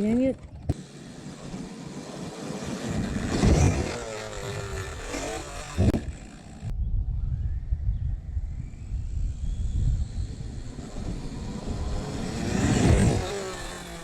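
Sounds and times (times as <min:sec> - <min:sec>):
electric motor whining: 0:00.0 - 0:06.7, 0:08.4 - 0:14.0.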